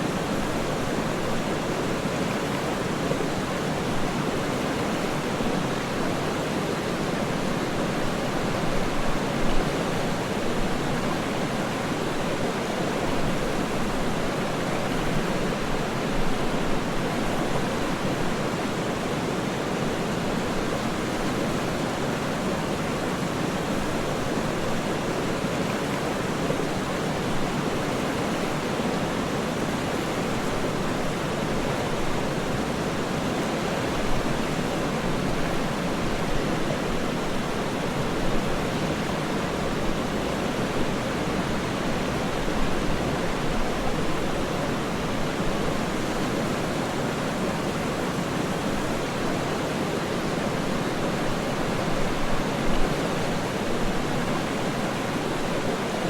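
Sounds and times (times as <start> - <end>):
waterfall rushing: 21.5 - 56.0.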